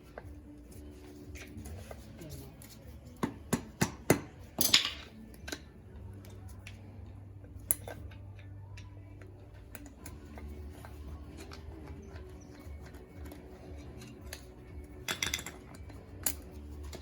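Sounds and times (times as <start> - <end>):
metallic tool clicks: 7.6 - 10.5, 11.4 - 17.0.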